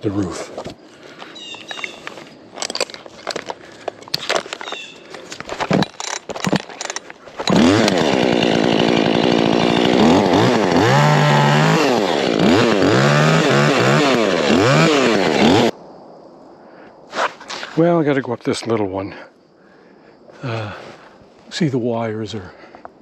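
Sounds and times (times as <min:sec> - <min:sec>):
knocks and rustles: 0:01.5 - 0:08.0
chainsaw revving: 0:05.6 - 0:15.7.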